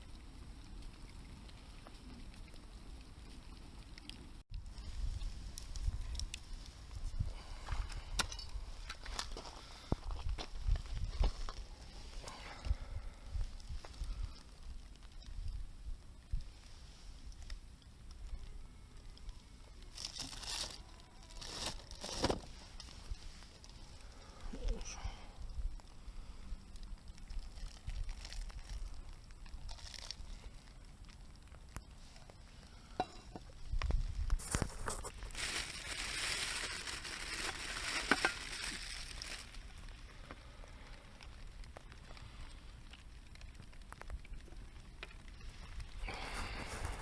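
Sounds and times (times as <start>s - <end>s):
campfire crackling: 0.0s - 47.0s
fire pops: 0.1s - 16.6s, 36.8s - 47.0s
crinkling and rustling: 19.8s - 24.0s, 26.8s - 40.6s, 41.2s - 47.0s.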